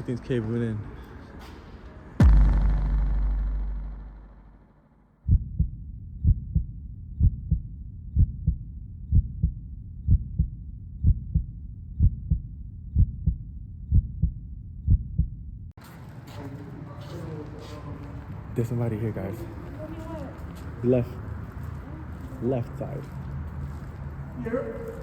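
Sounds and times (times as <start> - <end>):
heartbeat thumps: 2.2 - 4.5, 5.3 - 15.6
deep boom: 2.2 - 7.6.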